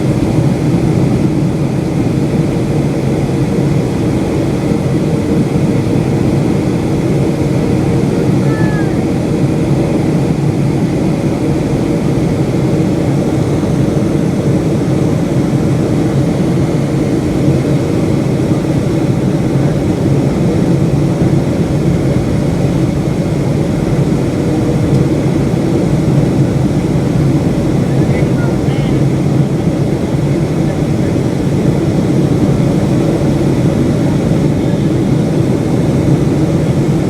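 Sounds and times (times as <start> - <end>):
jet engines roaring in cabin: 0.0 - 37.0
rushing air: 17.5 - 34.4.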